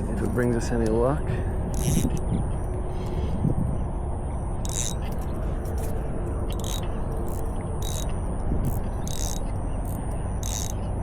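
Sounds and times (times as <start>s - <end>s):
spinning reel winding: 1.7s - 2.2s, 4.6s - 5.1s, 6.5s - 10.9s.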